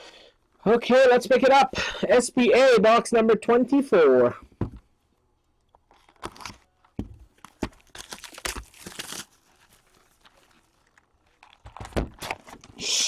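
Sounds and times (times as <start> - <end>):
wrappers crinkling and tearing: 5.6 - 12.7.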